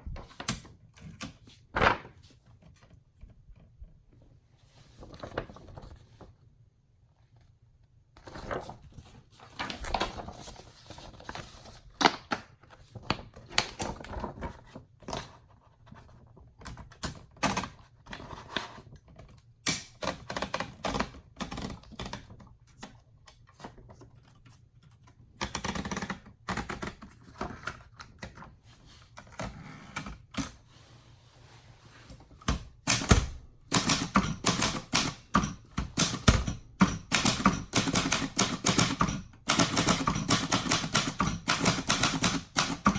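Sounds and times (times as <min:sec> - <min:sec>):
manual typewriter typing: 0:19.7 - 0:22.4, 0:25.0 - 0:28.0, 0:32.4 - 0:42.9.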